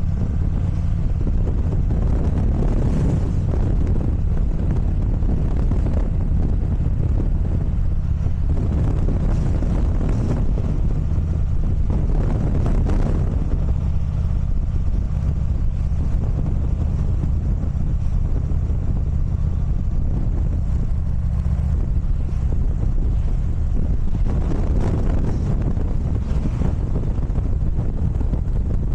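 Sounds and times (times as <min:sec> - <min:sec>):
ferry engines rumbling: 0:00.0 - 0:28.9
wind buffeting microphone: 0:00.0 - 0:28.9.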